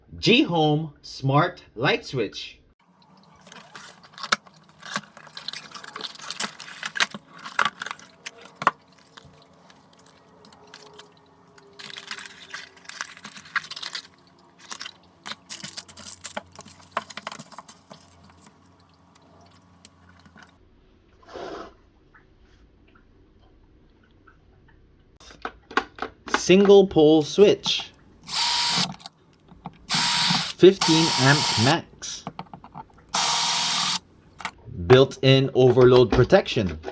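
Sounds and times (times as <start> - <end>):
objects rustling and clicking: 3.0 - 20.6, 28.8 - 29.9, 32.2 - 33.2.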